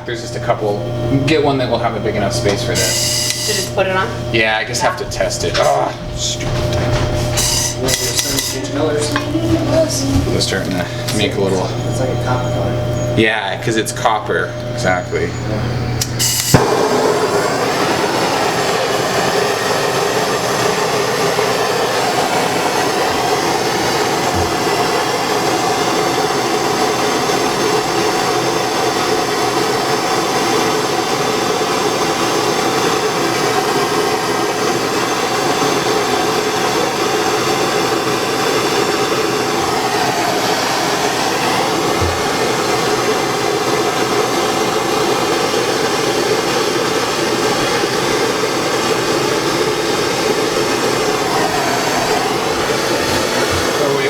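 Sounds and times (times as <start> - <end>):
torch flame roaring: 0.0 - 54.0
torch igniting pop: 16.0 - 25.1.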